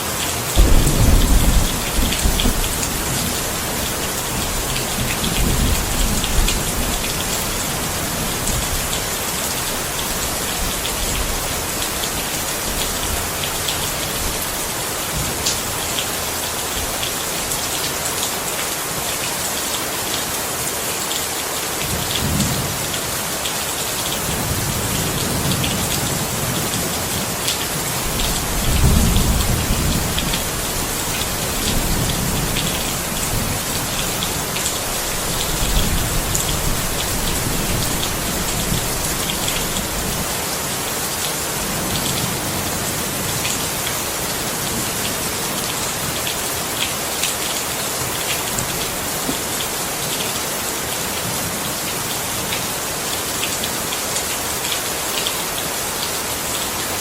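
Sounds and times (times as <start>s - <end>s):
heavy rain falling: 0.0s - 57.0s
thunder rumbling: 0.6s - 9.2s, 27.9s - 40.3s.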